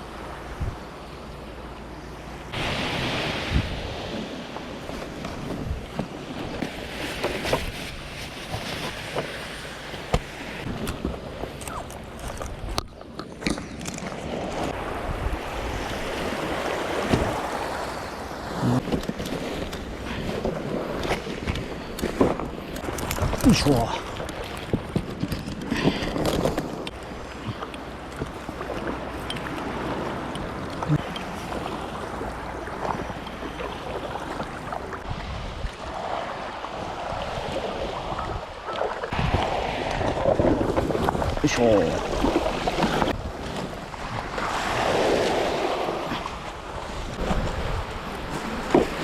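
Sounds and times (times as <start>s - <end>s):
wind on microphone: 0.0s - 0.9s, 2.6s - 9.5s, 10.1s - 27.6s, 29.1s - 49.0s
sea waves washing onto shore: 0.0s - 12.8s, 13.4s - 49.0s.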